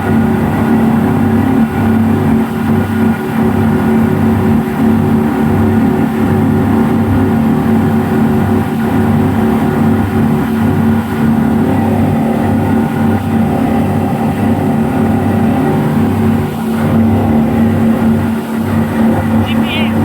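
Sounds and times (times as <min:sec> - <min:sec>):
outboard engines droning: 0:00.0 - 0:20.0.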